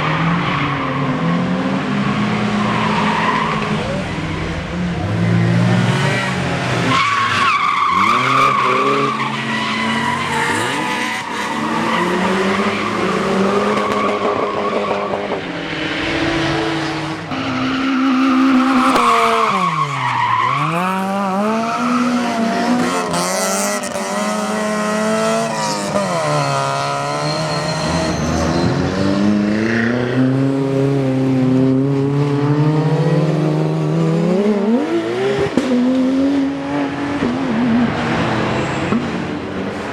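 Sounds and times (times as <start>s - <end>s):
tyres skidding: 0.0s - 30.8s
rally car engine revving: 0.0s - 39.9s.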